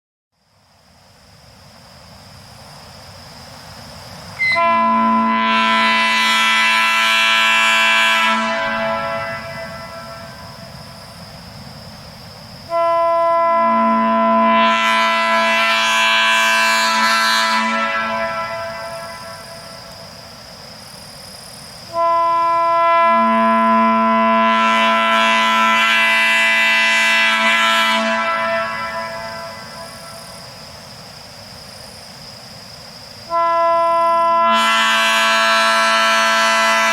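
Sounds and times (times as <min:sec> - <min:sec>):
train horn blast: 0:04.4 - 0:10.8, 0:12.7 - 0:20.0, 0:21.9 - 0:30.3, 0:33.3 - 0:36.9.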